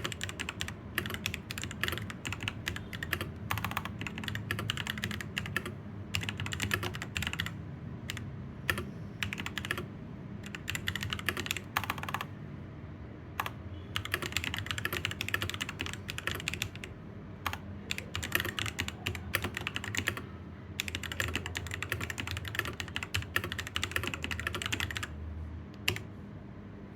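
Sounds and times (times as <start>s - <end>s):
mechanical keyboard typing: 0.0s - 12.3s, 13.4s - 25.2s, 25.8s - 26.1s.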